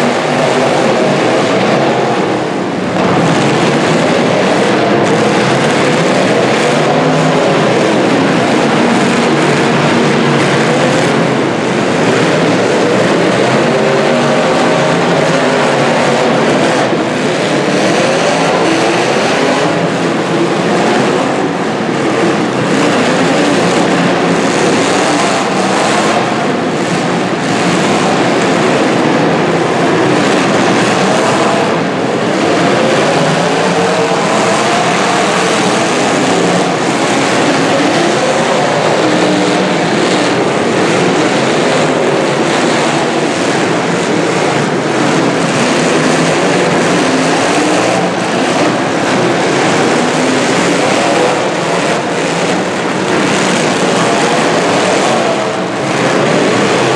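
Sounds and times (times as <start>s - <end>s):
car engines revving hard: 0.0s - 56.9s.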